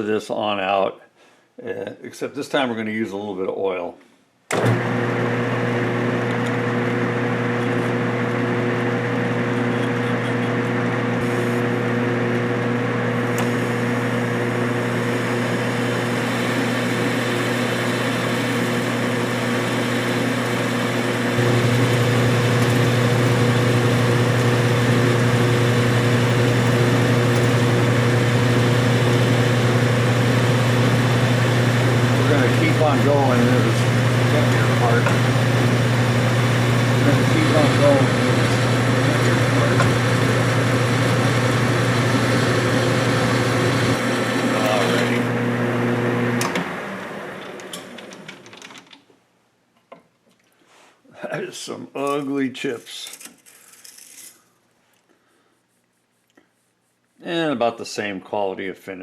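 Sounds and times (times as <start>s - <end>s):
metal lathe cutting: 4.6s - 47.9s.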